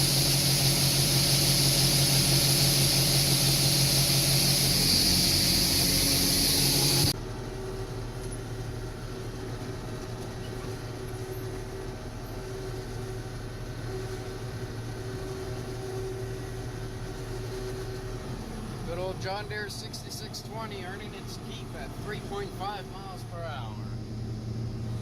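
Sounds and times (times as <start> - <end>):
strong hiss: 0.0 - 7.2
combine harvester running: 0.0 - 25.0.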